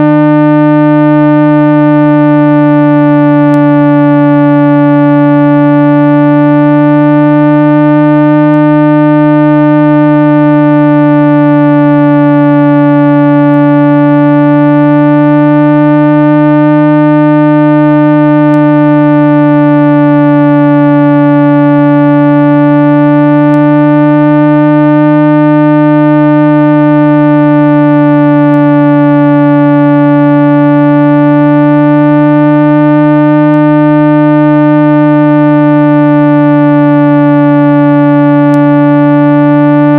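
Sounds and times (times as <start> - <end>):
low electronic tone: 0.0 - 39.9.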